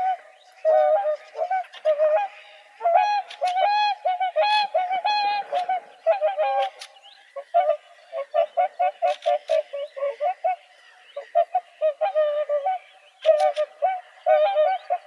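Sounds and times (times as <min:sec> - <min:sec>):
swans honking: 0:00.0 - 0:12.6.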